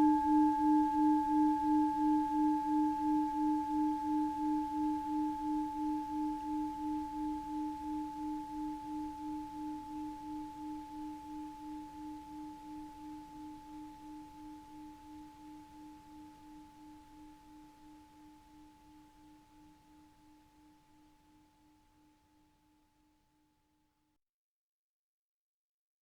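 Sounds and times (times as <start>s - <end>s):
singing bowl ringing: 0.0s - 20.0s.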